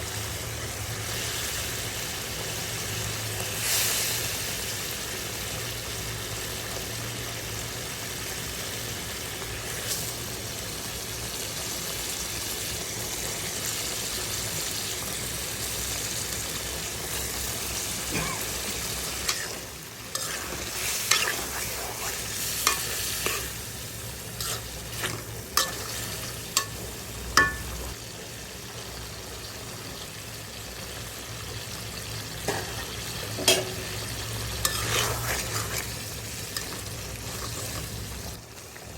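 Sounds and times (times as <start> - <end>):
food sizzling in oil: 0.0 - 38.9
spatula scraping a pan: 19.2 - 23.7, 24.3 - 26.8, 34.6 - 37.9.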